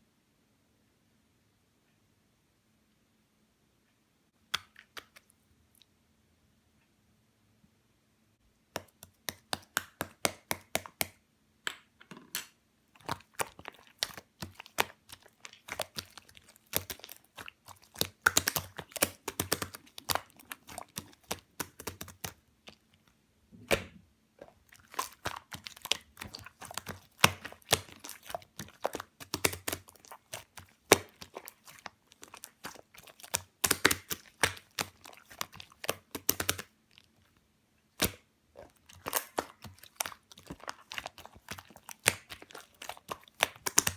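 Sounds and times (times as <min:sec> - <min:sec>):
slime squished by hand: 0:08.7 - 0:11.2, 0:12.4 - 0:43.9.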